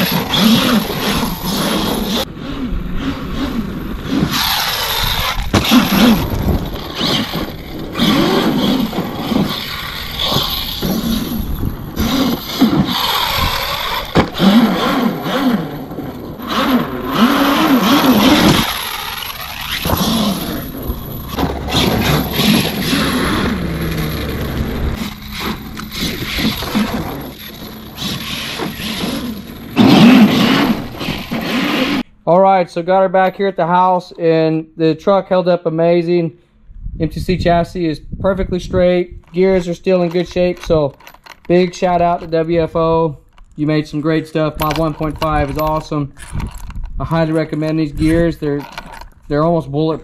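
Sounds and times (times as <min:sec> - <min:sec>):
rc truck motor whining: 0:00.0 - 0:32.1
tyres scraping on gravel: 0:00.0 - 0:32.1, 0:38.9 - 0:50.0.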